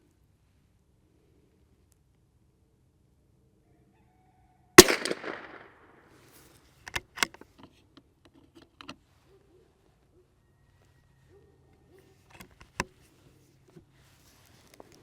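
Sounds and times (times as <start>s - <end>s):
rifle bolt metallic clicks: 4.8s - 5.7s
rifle shot with echo: 4.8s - 5.9s.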